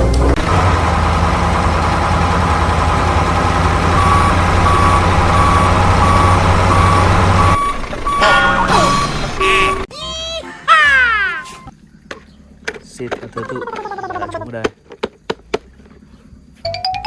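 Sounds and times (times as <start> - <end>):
truck engine running: 0.0 - 9.9
reversing alarm beeping: 3.9 - 9.8.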